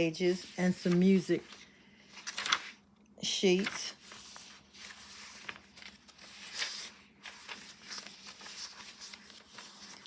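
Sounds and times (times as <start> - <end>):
paper pages rustling: 0.2 - 2.8, 3.5 - 10.0.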